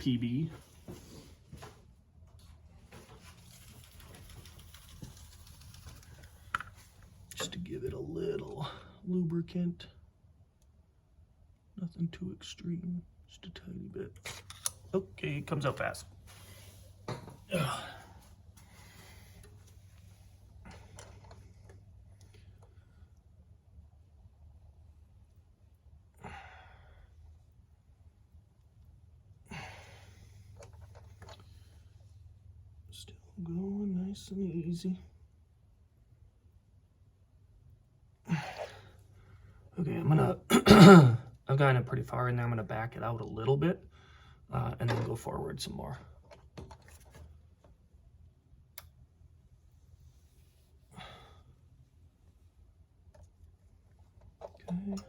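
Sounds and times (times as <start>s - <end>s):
man sighing heavily: 17.4s - 18.2s, 26.2s - 27.0s, 38.3s - 38.9s
person exhaling: 17.5s - 19.4s.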